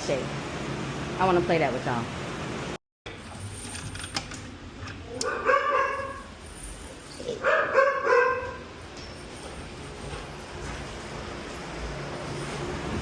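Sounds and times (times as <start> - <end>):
dog barking: 5.2 - 6.3, 7.4 - 8.6.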